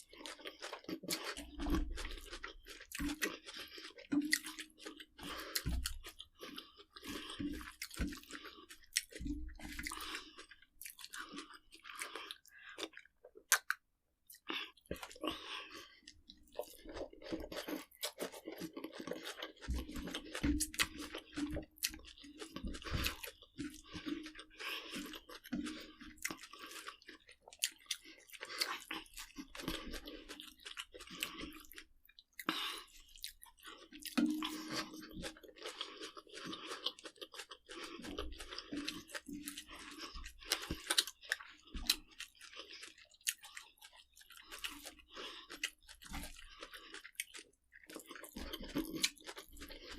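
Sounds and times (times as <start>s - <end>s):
person chewing crunchy food: 0.0s - 49.9s.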